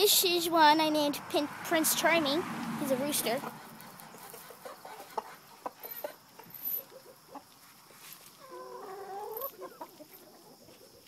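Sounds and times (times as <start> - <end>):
chickens clucking: 2.9 - 11.0
chicken drawn-out call: 3.5 - 7.6, 8.3 - 11.0.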